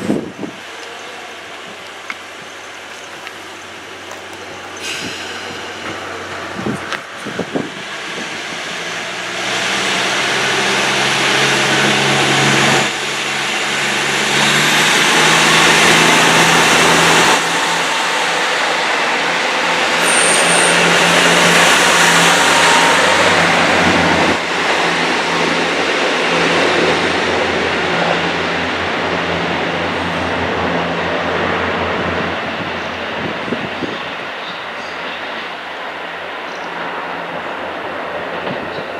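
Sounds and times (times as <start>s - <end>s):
diesel engines: 0.0s - 38.9s.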